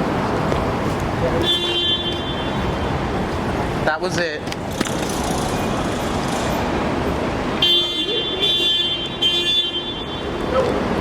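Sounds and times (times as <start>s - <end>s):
road traffic: 0.0s - 11.0s
car horn: 1.4s - 2.9s, 7.6s - 10.4s.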